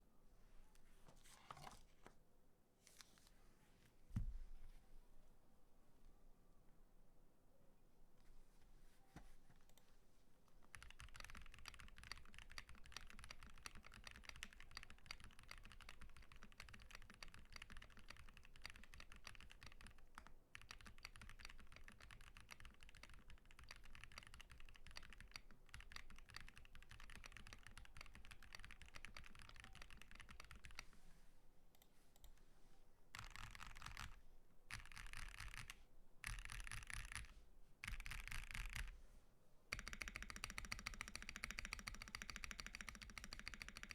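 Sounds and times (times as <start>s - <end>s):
mechanical keyboard typing: 10.7s - 30.9s, 33.2s - 38.9s, 39.7s - 43.9s.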